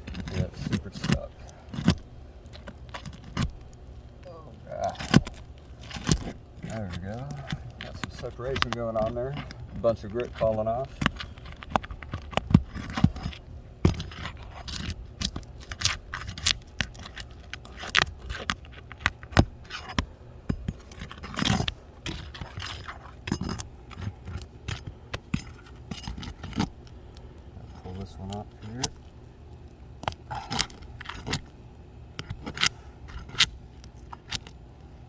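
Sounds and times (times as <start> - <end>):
metal bar scraping shingles: 0.0 - 3.8.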